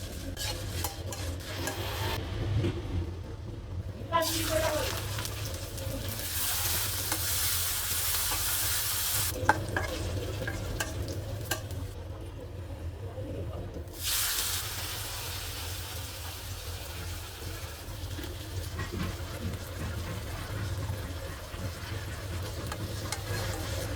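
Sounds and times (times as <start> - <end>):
food sizzling in oil: 0.0 - 2.2, 4.1 - 12.0, 14.0 - 23.9
spatula clinking against pan: 9.5 - 11.8, 22.7 - 23.9.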